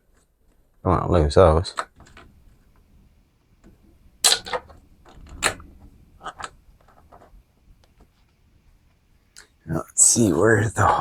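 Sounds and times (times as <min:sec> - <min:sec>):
hard plastic clicks and knocks: 0:01.8 - 0:09.5.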